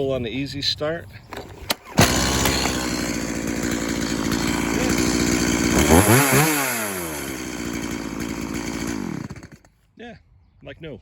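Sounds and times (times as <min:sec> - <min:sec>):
chainsaw idling and revving: 0:01.8 - 0:09.7.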